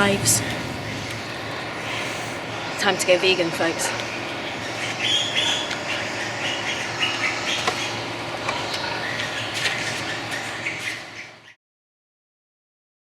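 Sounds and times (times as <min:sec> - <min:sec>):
mechanical hum and hiss: 0:00.0 - 0:11.6
pigs squealing: 0:04.6 - 0:11.3.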